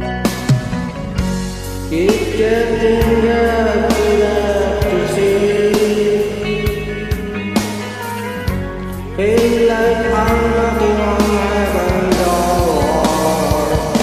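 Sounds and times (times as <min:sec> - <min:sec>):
rock band playing: 0:00.0 - 0:14.0
drum hits: 0:00.3 - 0:08.6
person singing long held note: 0:01.9 - 0:08.0.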